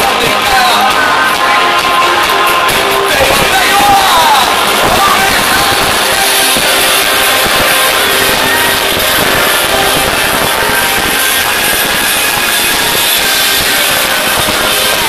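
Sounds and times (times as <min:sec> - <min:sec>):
distorted live rock band: 0:00.0 - 0:15.0.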